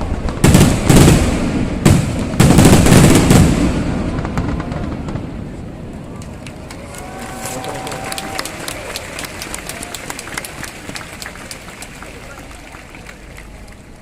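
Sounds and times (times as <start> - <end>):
fireworks shells booming: 0.0 - 5.8.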